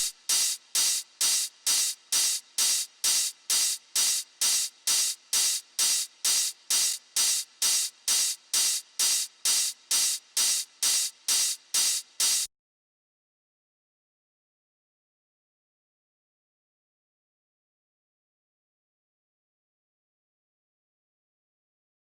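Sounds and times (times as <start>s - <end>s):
hissy hi-hat loop: 0.0s - 12.5s.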